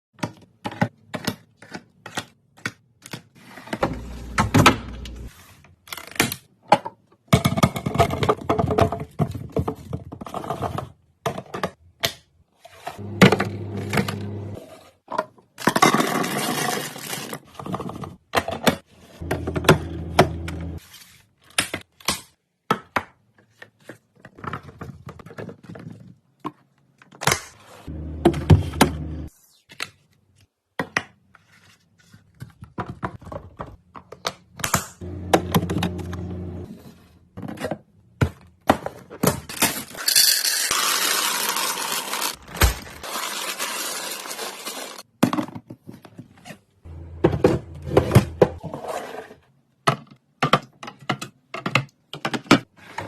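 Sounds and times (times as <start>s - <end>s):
plastic scraping and rustling: 40.7s - 45.1s.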